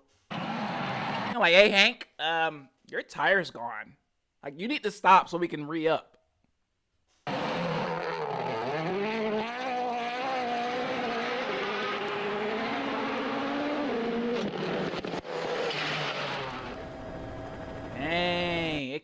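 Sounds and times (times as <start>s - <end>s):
rally car engine running hard: 7.3s - 17.8s.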